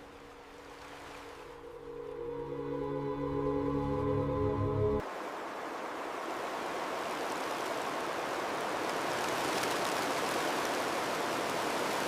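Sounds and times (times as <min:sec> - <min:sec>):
water rushing: 0:00.0 - 0:12.0.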